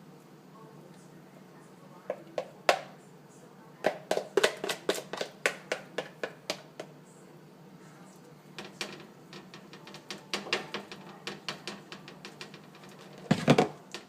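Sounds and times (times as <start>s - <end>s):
utensil tapping against cookware: 3.9s - 6.9s, 8.6s - 14.0s.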